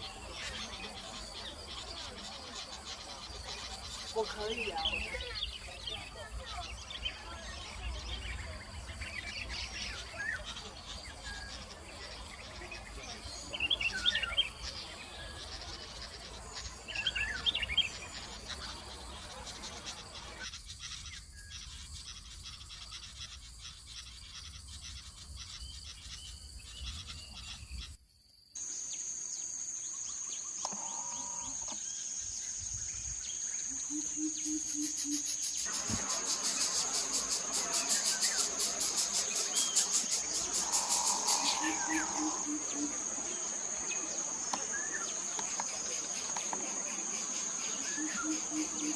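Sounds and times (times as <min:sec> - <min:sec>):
insect trill: 0:00.0 - 0:48.9
bird calls: 0:28.6 - 0:48.9.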